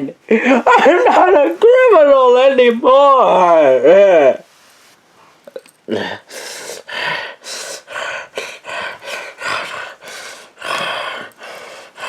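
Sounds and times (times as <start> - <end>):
man sobbing and gasping: 5.9 - 12.0.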